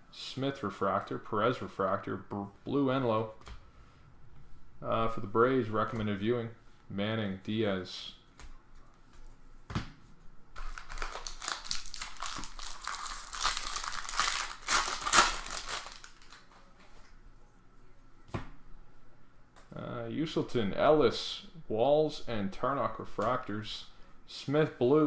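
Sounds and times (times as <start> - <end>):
foil wrapper crinkling and tearing: 10.6 - 16.6.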